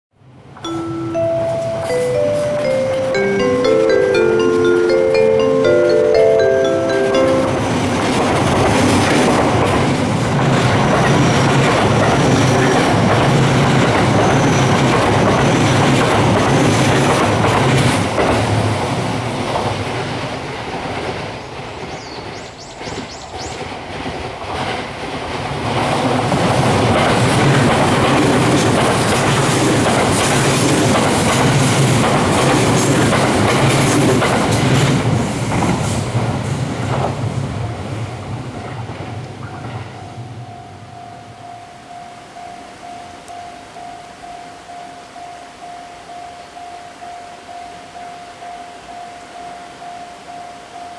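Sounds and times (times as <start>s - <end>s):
electric train passing: 0.6s - 22.3s, 23.3s - 42.9s
wheels clicking over rail joints: 23.6s - 37.4s.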